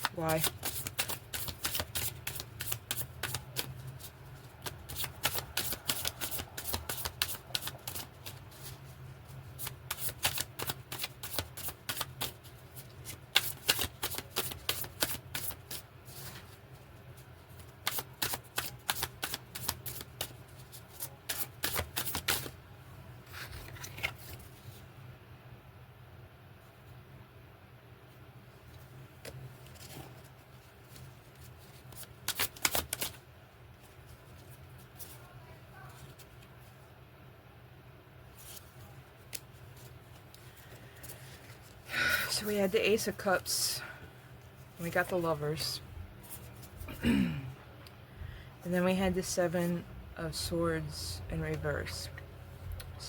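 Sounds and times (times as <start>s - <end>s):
card deck shuffled by hand: 0.0s - 8.8s, 9.6s - 16.6s, 17.6s - 22.5s, 23.3s - 24.5s, 29.2s - 33.2s.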